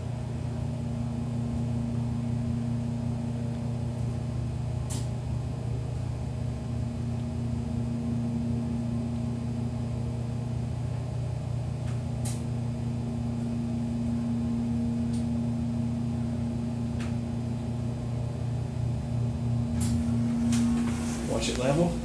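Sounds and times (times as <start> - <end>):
elevator pump motor hum: 0.0 - 22.0.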